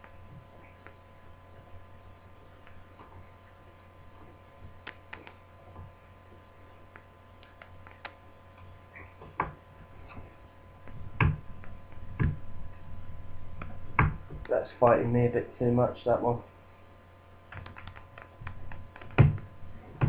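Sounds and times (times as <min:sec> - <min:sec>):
electrical hum: 0:00.0 - 0:20.0.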